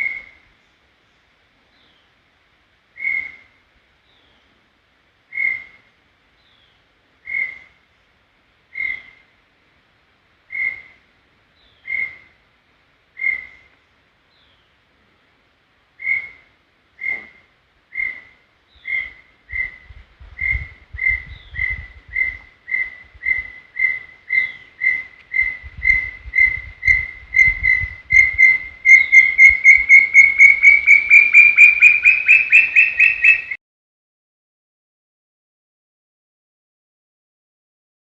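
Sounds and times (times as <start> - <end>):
bird whistled song: 17.9 - 33.6.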